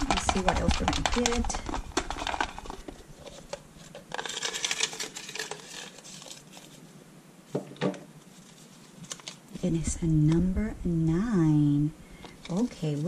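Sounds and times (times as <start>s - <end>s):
paper slips rattling in container: 0.0s - 6.8s.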